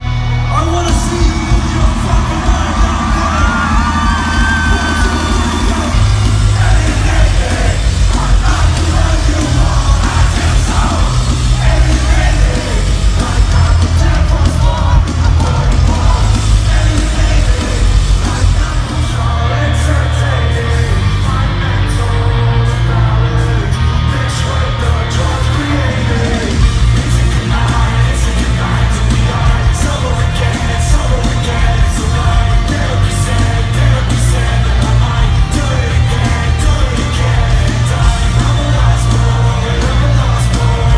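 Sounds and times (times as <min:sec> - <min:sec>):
heavy bass: 0:00.0 - 0:40.9
live rock band playing: 0:00.0 - 0:40.9
person singing and yelling: 0:00.6 - 0:40.9.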